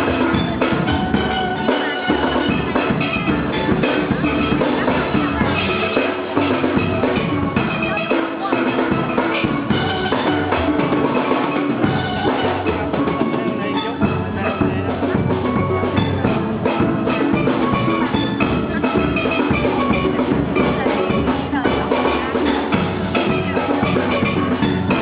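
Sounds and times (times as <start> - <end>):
drum kit: 0.0 - 25.0
steelpans playing melody: 0.0 - 25.0
low bass line: 8.7 - 25.0.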